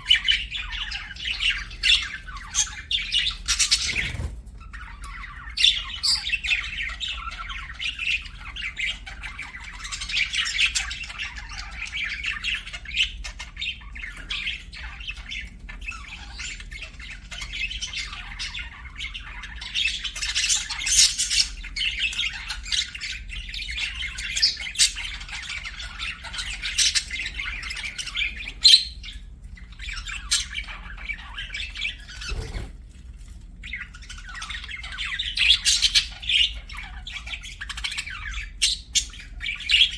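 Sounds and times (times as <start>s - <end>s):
budgerigars chirping and chattering: 0.0s - 39.9s.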